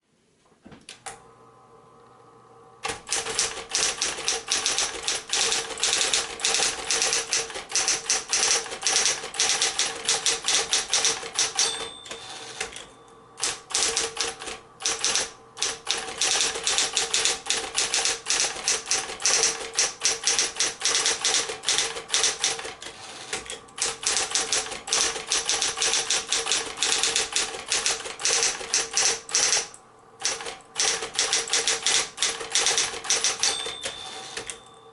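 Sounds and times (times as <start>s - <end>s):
typewriter keystrokes clattering: 2.8s - 34.6s
typewriter motor humming: 2.8s - 34.7s
short ringing tone: 11.4s - 13.5s, 33.2s - 34.9s.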